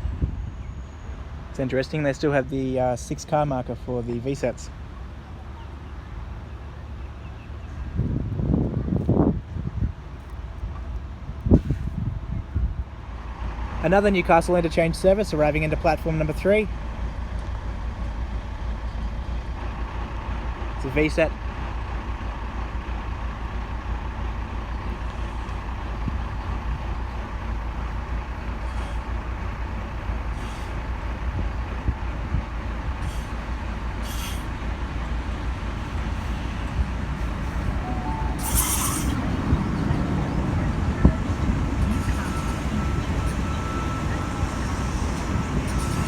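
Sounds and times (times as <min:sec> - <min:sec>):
brake squeal: 0:00.0 - 0:02.0, 0:24.5 - 0:46.0
train rumbling: 0:00.0 - 0:46.0
air brakes hissing: 0:11.5 - 0:12.1, 0:26.8 - 0:31.4, 0:32.2 - 0:46.0.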